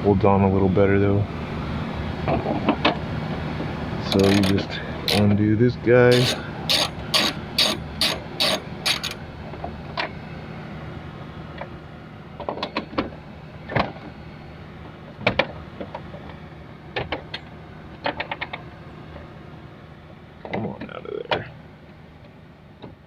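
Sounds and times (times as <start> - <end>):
ratchet wrench clicking: 4.1 - 5.3, 6.1 - 9.2
parts being handled clicks: 4.1 - 5.4, 6.1 - 9.2.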